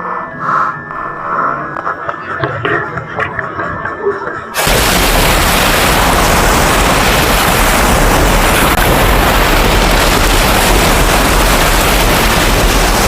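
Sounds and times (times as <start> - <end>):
loud steady rushing noise: 3.8 - 13.0.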